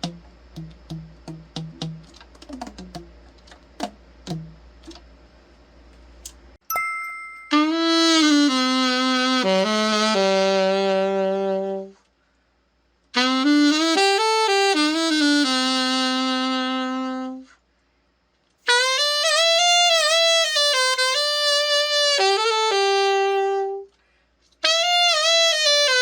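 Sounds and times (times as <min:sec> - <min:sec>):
saxophone playing held notes: 0:07.5 - 0:12.0, 0:13.1 - 0:17.5, 0:18.6 - 0:23.9, 0:24.6 - 0:26.0.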